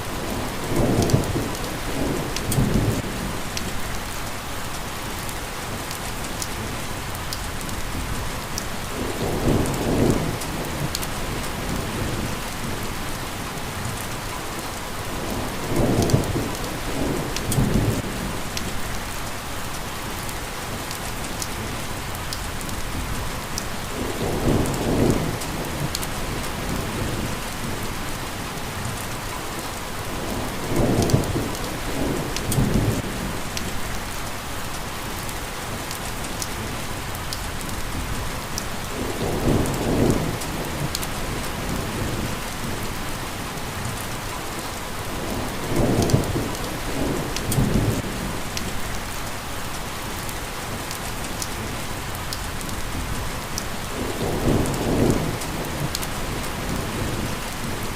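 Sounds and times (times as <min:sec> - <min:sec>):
heavy rain hissing: 0:00.0 - 0:57.9
sharp raindrop ticks: 0:00.9 - 0:08.8, 0:15.8 - 0:19.4, 0:30.8 - 0:42.0, 0:45.8 - 0:49.4, 0:50.2 - 0:57.0
thunder rumbling: 0:30.1 - 0:34.0, 0:38.9 - 0:42.9, 0:45.0 - 0:49.1, 0:52.9 - 0:57.9.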